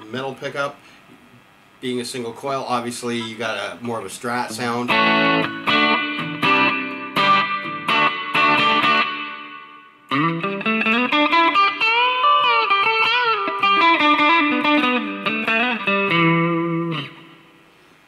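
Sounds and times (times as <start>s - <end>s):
electric guitar with string bends: 4.5s - 17.9s.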